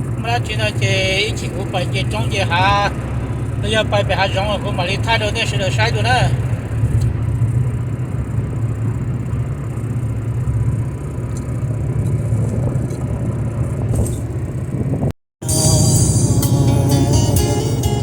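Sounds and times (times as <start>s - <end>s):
vehicle engine and road noise: 0.0s - 18.0s
guitar music: 15.4s - 18.0s.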